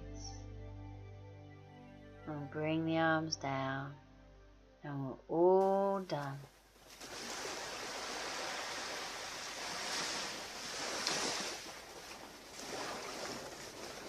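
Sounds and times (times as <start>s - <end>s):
ocean waves washing onto beach: 6.9s - 14.0s.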